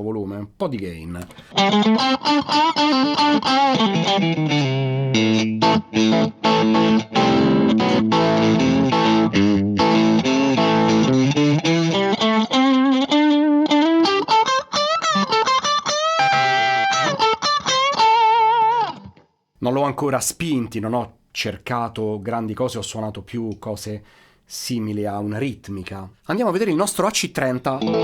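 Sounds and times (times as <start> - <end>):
overdriven electric guitar: 1.2 - 19.4, 27.8 - 28.0.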